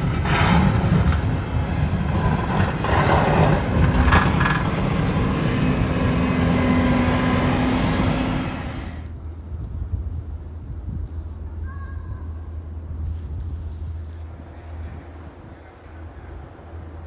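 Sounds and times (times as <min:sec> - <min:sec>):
vehicle passing: 0:00.0 - 0:09.1
steady traffic hum: 0:00.0 - 0:11.6.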